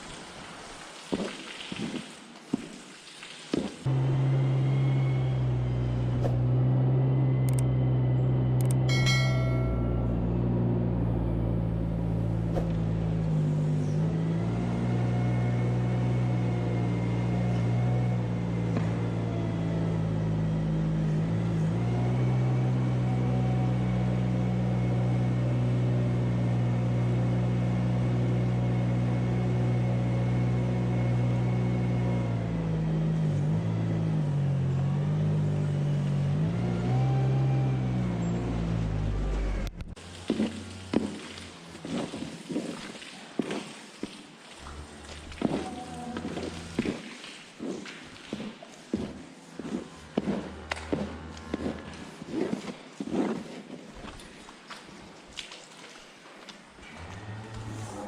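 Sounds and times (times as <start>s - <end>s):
farm vehicle engine running: 3.9s - 42.2s, 44.6s - 47.1s, 48.9s - 52.9s, 56.8s - 58.0s.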